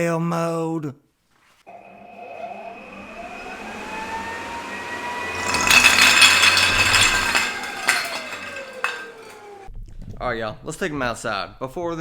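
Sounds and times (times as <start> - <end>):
leaf blower whining: 1.7 - 8.8.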